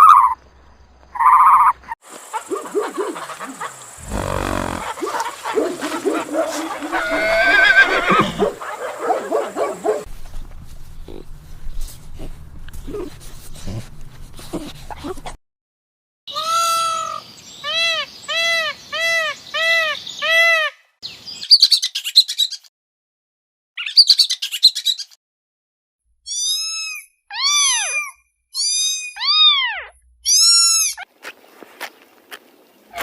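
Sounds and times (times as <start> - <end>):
bird calls: 0.0 - 10.1
harsh rasping bird calls: 1.1 - 10.1.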